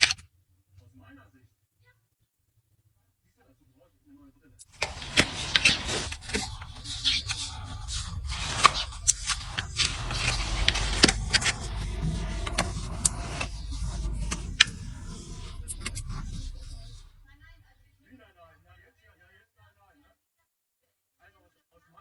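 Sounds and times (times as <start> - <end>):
tools scraping hoof: 4.8 - 17.5
low rumble: 4.8 - 17.9.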